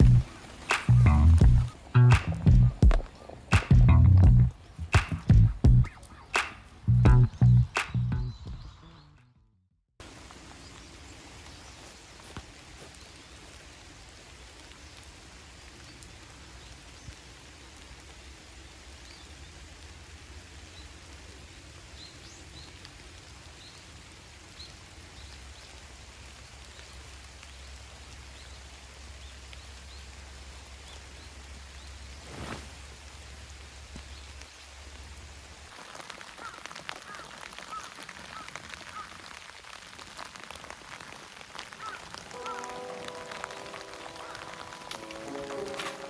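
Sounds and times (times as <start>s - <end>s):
steady rain falling: 0.0s - 7.6s, 10.0s - 46.0s
raindrops ticking: 0.0s - 8.6s, 33.7s - 46.0s.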